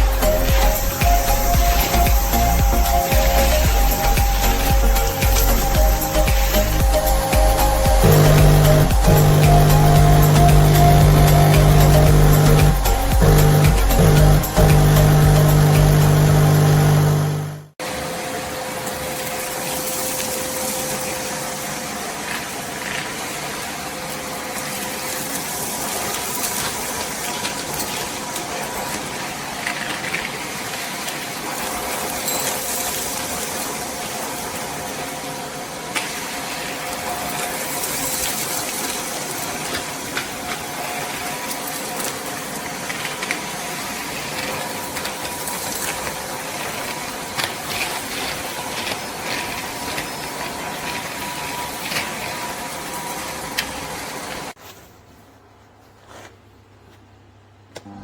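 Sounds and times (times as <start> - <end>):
debris rattling through hose: 0.0 - 17.5
wet dry vacuum cleaner running: 0.0 - 17.8, 57.8 - 58.0.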